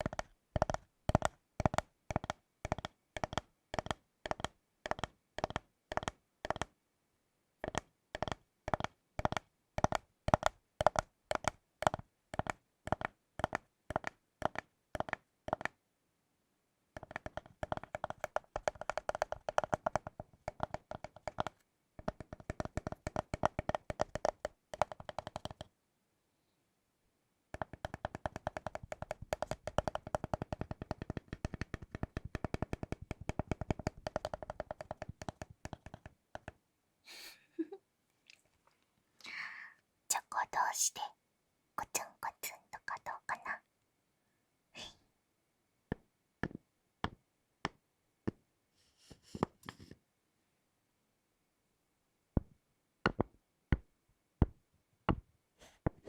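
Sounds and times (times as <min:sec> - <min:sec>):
tapping on chocolate bar: 0:07.6 - 0:15.7, 0:17.0 - 0:25.7, 0:27.6 - 0:36.6.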